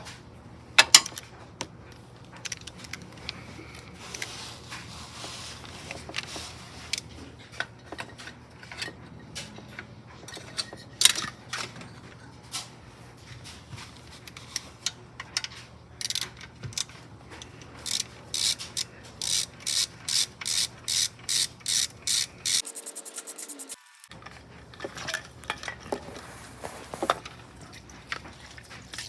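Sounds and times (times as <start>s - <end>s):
ratchet wrench clicking: 17.8s - 24.1s.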